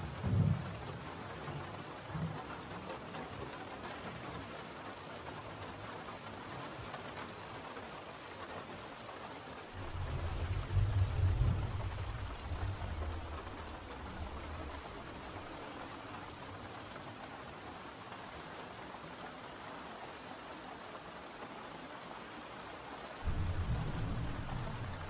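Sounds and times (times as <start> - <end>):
steady rain falling: 0.0 - 25.0
low rumble: 9.8 - 15.6, 23.2 - 25.0.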